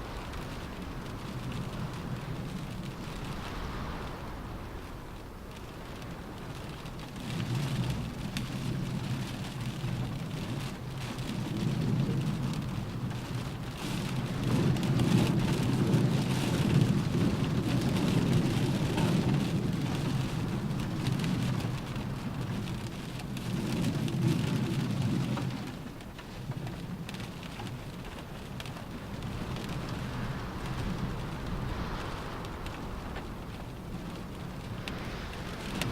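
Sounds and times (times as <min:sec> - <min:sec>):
rain on a car roof: 0:00.0 - 0:35.9
deep rumble: 0:28.0 - 0:35.9.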